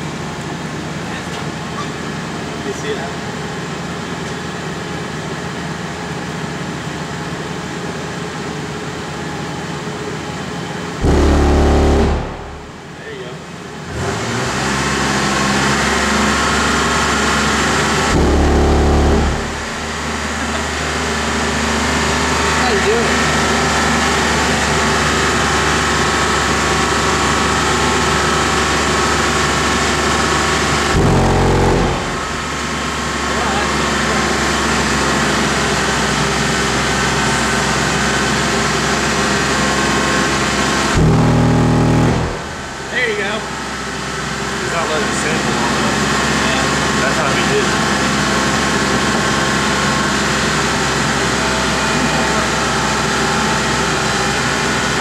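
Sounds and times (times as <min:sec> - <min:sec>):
vehicle engine idling: 0:10.6 - 0:13.8, 0:17.4 - 0:55.0
deep subwoofer bass burst: 0:11.0 - 0:12.9, 0:18.1 - 0:20.0, 0:30.9 - 0:32.8, 0:41.0 - 0:42.9.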